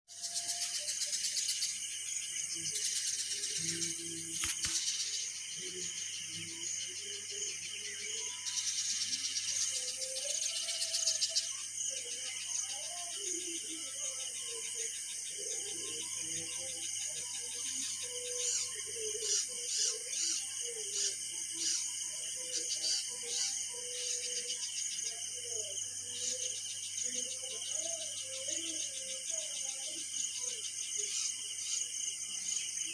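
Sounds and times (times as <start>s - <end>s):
birds chirping: 0.1s - 32.9s
high-pitched insect drone: 0.1s - 32.9s.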